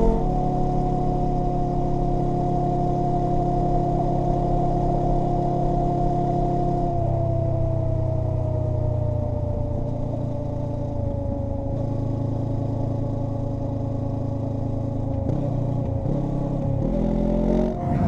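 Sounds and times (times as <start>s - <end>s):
tyre whine: 17.7s - 18.0s.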